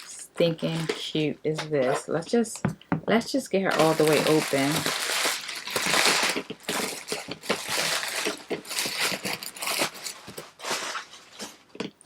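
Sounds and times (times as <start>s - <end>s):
packaging rustling and crinkling: 3.7s - 11.7s.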